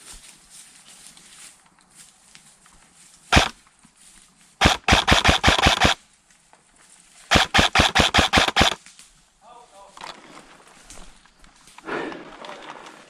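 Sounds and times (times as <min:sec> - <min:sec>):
airsoft gun shots: 0:03.3 - 0:03.6, 0:04.6 - 0:06.0, 0:07.3 - 0:08.8.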